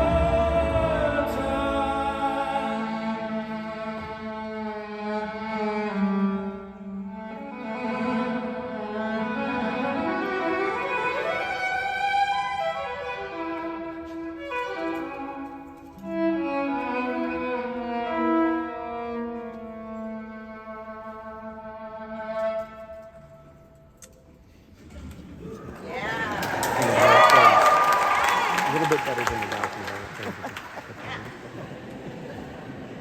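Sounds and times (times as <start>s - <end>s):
cello and bass: 0.0s - 14.7s
orchestral strings: 0.0s - 23.7s
violin: 0.0s - 24.2s.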